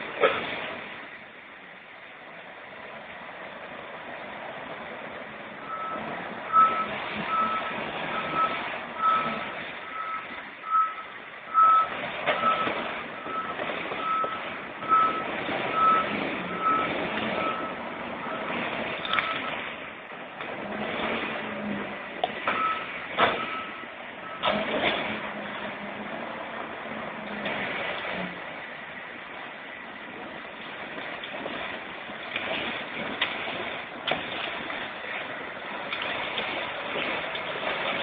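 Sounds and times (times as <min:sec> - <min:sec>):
heavy machine working: 0:00.0 - 0:38.0
backup alarm beeping: 0:05.6 - 0:19.7, 0:22.5 - 0:24.6.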